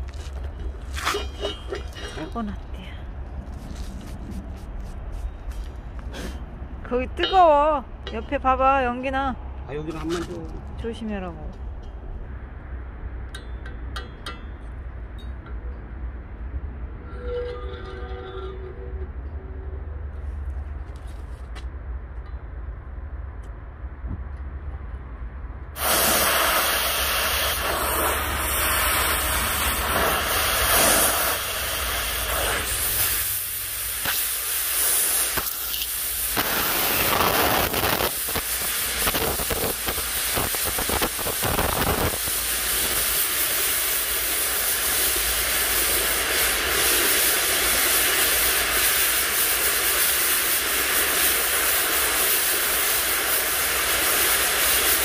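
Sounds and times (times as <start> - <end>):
cutting torch hissing: 25.8 - 55.0.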